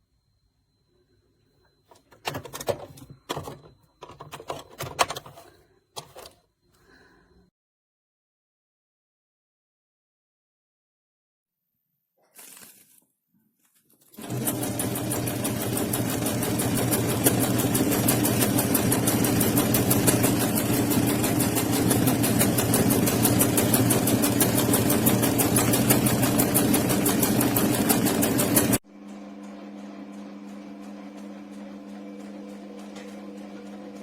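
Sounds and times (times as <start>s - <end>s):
sewing machine stitching: 1.9s - 6.4s, 14.2s - 28.8s.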